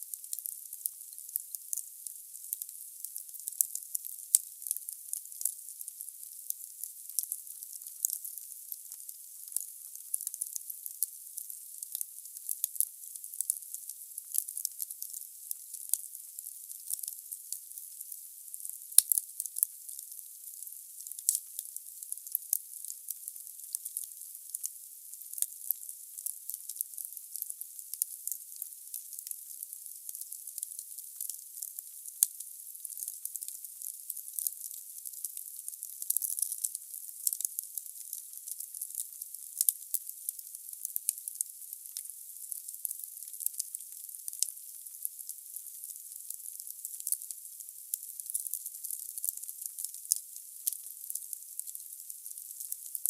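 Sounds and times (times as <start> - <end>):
wood fire crackling and hissing: 6.2 - 13.5, 17.7 - 22.0, 26.2 - 39.8, 41.8 - 45.0.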